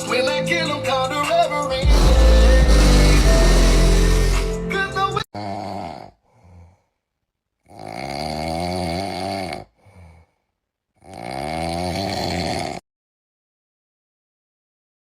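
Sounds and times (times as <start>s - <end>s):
loud snoring: 1.8s - 4.6s, 5.3s - 6.8s, 7.6s - 10.4s, 11.0s - 12.8s.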